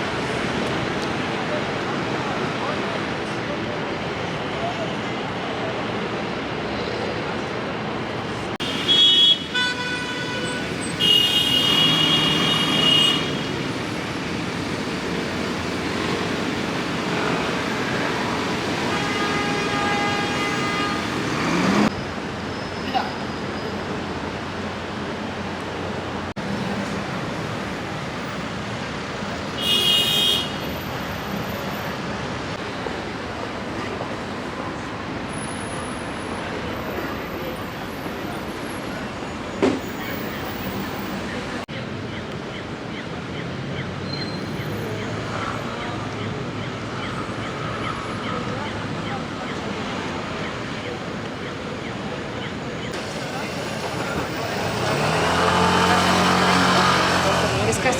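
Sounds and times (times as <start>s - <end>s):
street traffic: 0.0s - 57.9s
vehicle horn toot: 8.6s - 13.5s, 18.8s - 21.9s, 29.6s - 30.6s.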